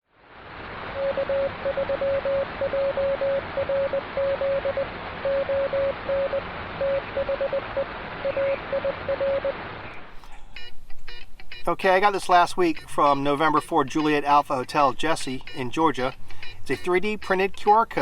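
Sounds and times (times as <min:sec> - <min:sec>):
radio static hiss: 0:00.4 - 0:10.9
morse code beeping tone: 0:00.9 - 0:09.6, 0:12.7 - 0:17.3.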